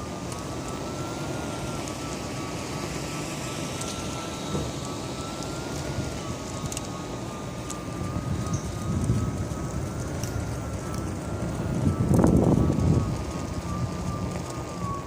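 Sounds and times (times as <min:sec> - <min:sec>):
electric motor whine: 0:00.0 - 0:15.0
tyre and wind noise: 0:05.6 - 0:15.0.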